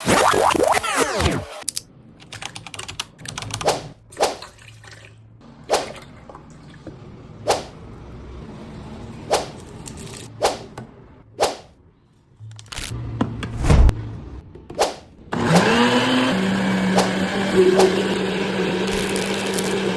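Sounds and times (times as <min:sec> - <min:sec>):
liquid pouring and dripping: 0:04.1 - 0:07.1.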